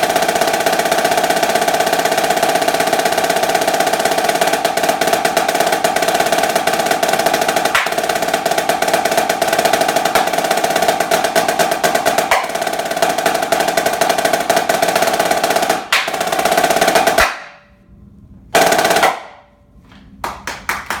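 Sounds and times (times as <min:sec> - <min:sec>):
snare drum rolls: 0:00.0 - 0:17.7, 0:18.5 - 0:19.5
audience clapping: 0:20.2 - 0:21.0.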